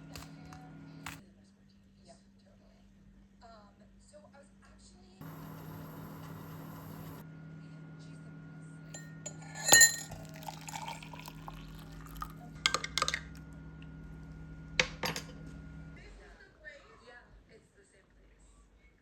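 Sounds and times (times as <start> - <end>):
steady low hum: 5.2 - 16.3
glass clinking: 9.0 - 13.3
dishes knocking: 9.2 - 10.2, 12.7 - 13.3, 14.8 - 15.4.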